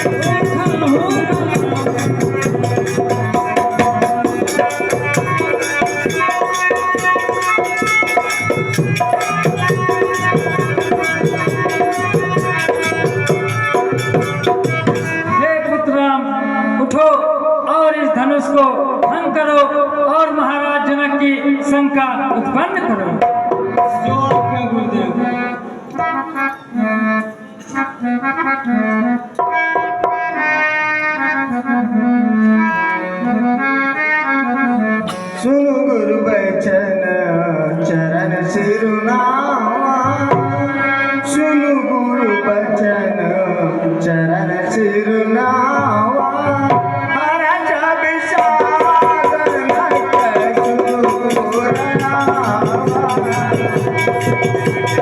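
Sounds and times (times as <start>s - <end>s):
fast hand-drum strokes: 0.0s - 15.4s, 23.1s - 24.9s, 48.4s - 55.0s
held melody notes: 0.0s - 16.8s
reed instrument melody: 0.0s - 17.0s, 23.4s - 35.1s, 48.7s - 55.0s.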